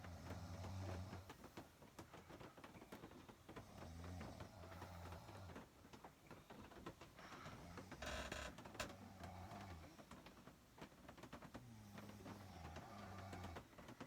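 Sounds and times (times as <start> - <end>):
faint ticking clicks: 0.0 - 14.0
faint snoring: 7.3 - 10.2, 11.6 - 14.0.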